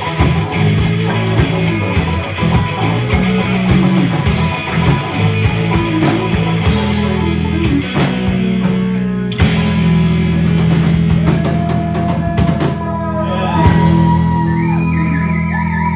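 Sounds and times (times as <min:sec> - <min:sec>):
rock band playing live: 0:00.0 - 0:15.9.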